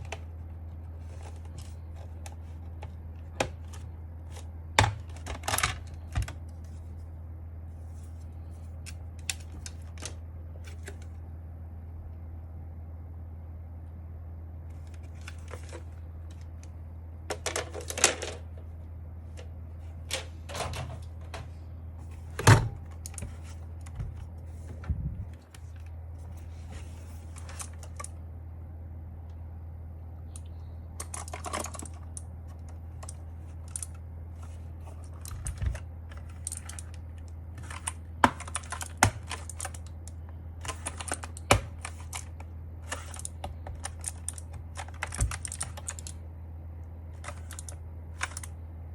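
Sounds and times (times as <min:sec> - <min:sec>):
steady low hum: 0:00.0 - 0:48.9
plastic keyboard clicks and clatter: 0:01.0 - 0:06.8, 0:14.9 - 0:16.5, 0:17.3 - 0:18.5, 0:22.4 - 0:24.2, 0:27.2 - 0:28.1, 0:30.4 - 0:46.2, 0:47.2 - 0:48.6.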